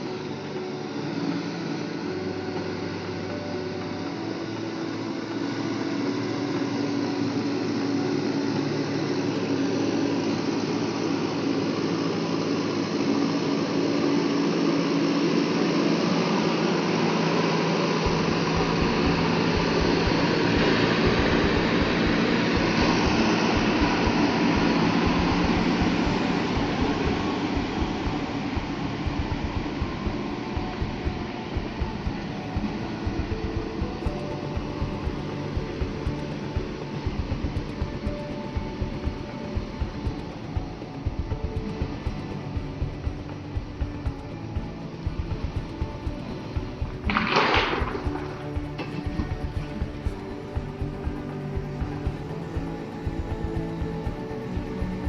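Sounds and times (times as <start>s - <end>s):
deep low rumble: 18.1s - 55.0s.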